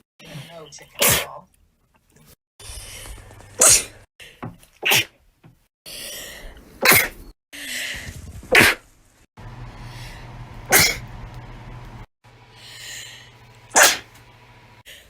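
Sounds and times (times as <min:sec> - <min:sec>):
person sneezing: 0:03.6 - 0:04.0, 0:04.8 - 0:05.1, 0:06.8 - 0:07.2, 0:10.7 - 0:11.0, 0:13.7 - 0:14.1.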